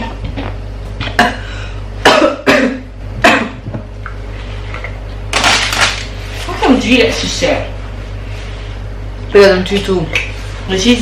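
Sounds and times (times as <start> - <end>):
person coughing: 1.1 - 3.7.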